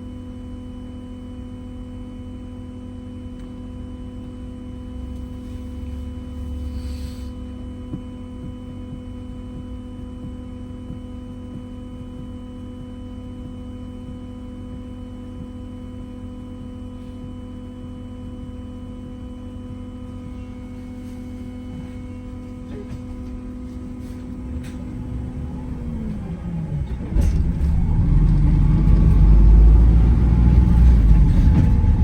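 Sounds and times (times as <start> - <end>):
bus electrical hum: 0.0 - 32.0
low rumble: 23.1 - 32.0.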